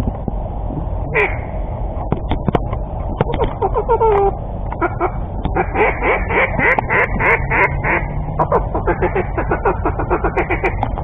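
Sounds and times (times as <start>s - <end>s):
ducks quacking: 1.2s - 1.4s, 3.4s - 11.0s.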